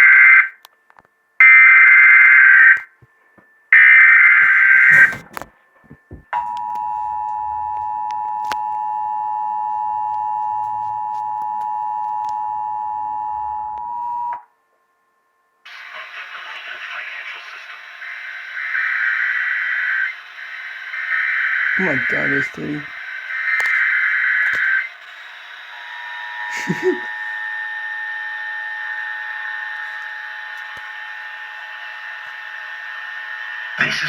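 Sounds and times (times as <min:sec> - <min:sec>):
harsh dual tone alert: 0:03.8 - 0:05.3, 0:18.7 - 0:33.6
warbling digital data bursts: 0:18.0 - 0:29.4.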